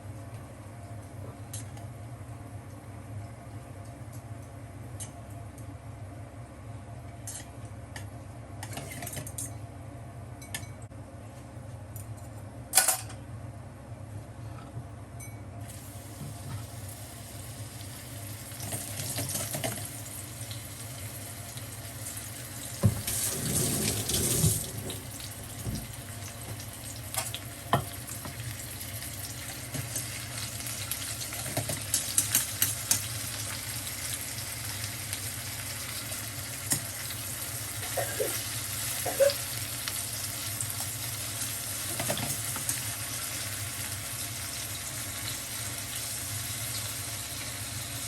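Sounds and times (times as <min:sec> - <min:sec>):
water running from tap: 0:22.6 - 0:26.9.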